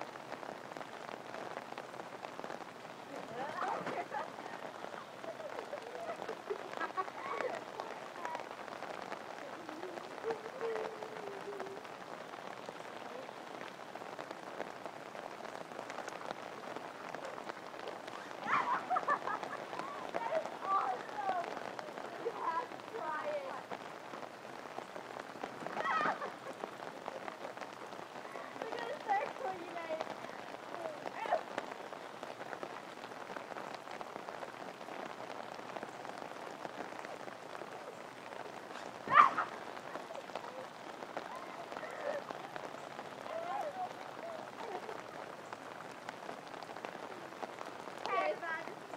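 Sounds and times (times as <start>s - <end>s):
water spattering on a surface: 0.0s - 48.9s
water drops pattering: 3.1s - 23.8s.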